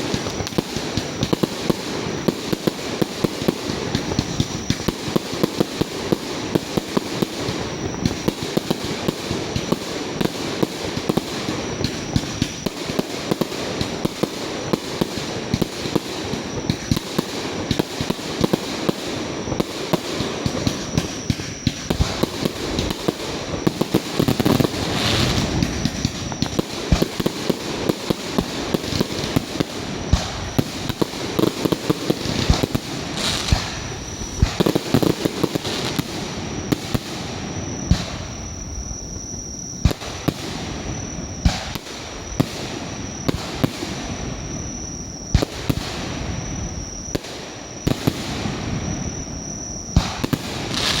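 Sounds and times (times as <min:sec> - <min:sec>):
firework shells bursting: 0:19.9 - 0:38.6.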